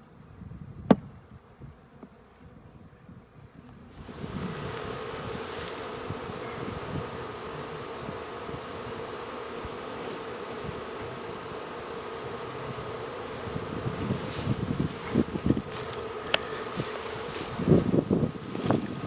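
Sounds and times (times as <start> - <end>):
honey bees buzzing: 3.9 - 19.0.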